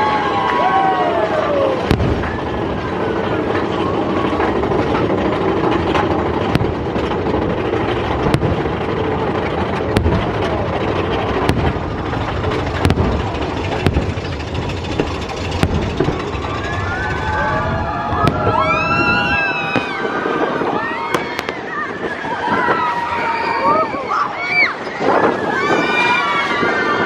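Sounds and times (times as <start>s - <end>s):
roller coaster rumbling on track: 0.0s - 27.0s
rush of wind: 0.0s - 27.0s
sharp cracks: 1.5s - 20.1s.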